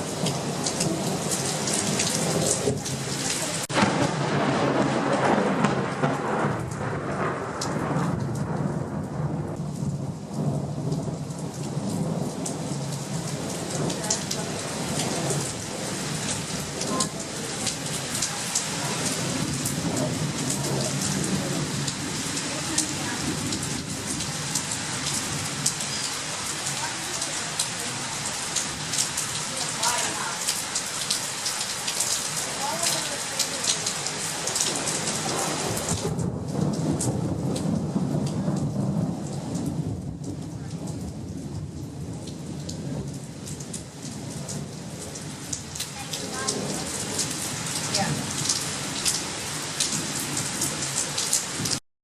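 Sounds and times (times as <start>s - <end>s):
low thunder rumble: 0.0s - 26.8s, 34.5s - 49.3s
heavy rain falling: 0.0s - 51.8s
sharp raindrops striking: 0.0s - 51.8s.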